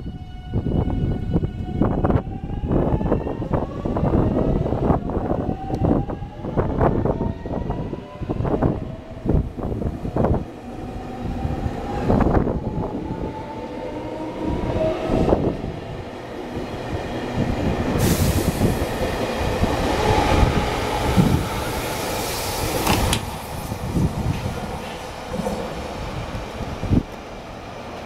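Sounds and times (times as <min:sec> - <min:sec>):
rushing hiss of passing cars: 0:18.0 - 0:19.0, 0:21.6 - 0:24.2.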